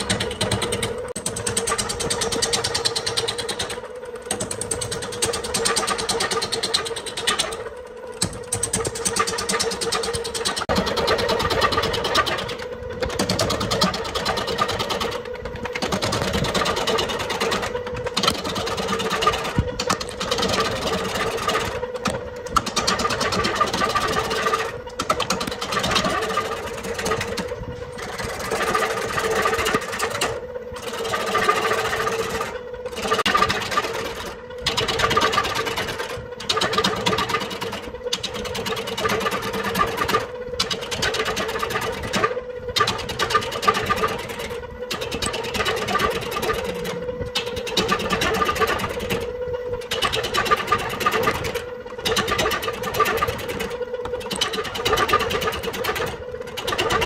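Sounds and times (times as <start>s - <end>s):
lathe motor hum: 0.0s - 57.0s
tool cutting spinning wood: 0.0s - 57.0s.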